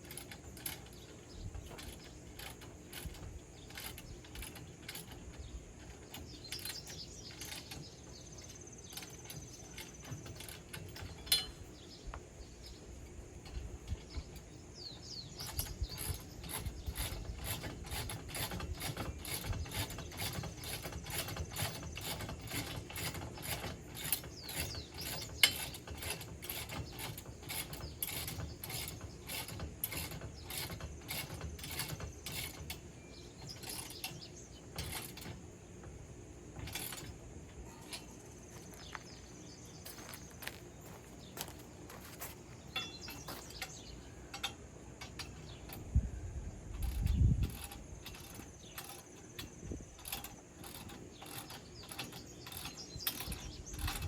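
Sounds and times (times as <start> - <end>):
sharp metal clinks: 42.7 - 45.9.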